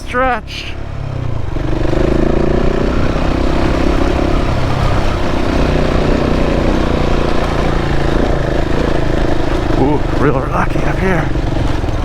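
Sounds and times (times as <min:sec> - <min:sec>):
motorcycle engine under throttle: 0:00.8 - 0:12.0.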